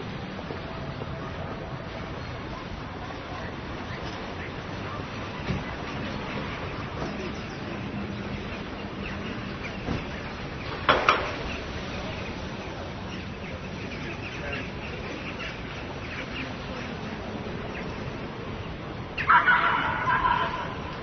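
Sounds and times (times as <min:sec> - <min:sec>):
birds chirping: 0:00.5 - 0:21.0
fowl-like bird call: 0:19.2 - 0:21.0.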